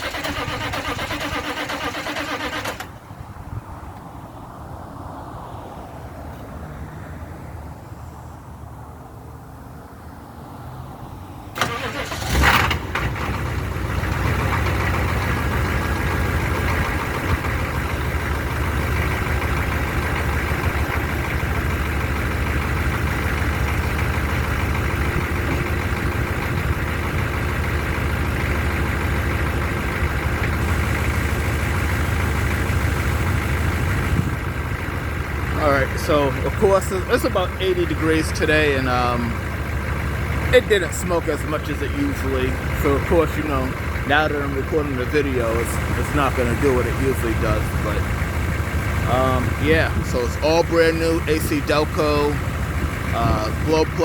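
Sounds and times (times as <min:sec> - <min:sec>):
starter motor cranking: 0:00.0 - 0:03.0, 0:11.6 - 0:18.2
diesel engine idling: 0:00.0 - 0:05.1, 0:11.2 - 0:54.0.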